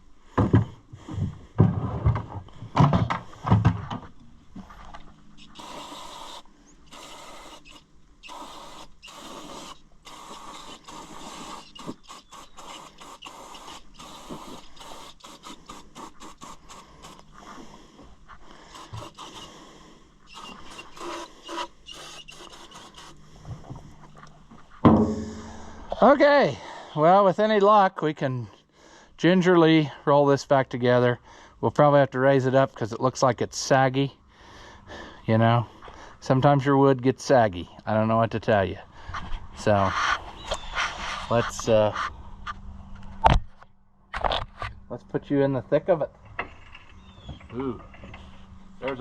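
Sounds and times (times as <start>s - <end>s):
scraping and knocking of parts: 0.4s - 5.1s.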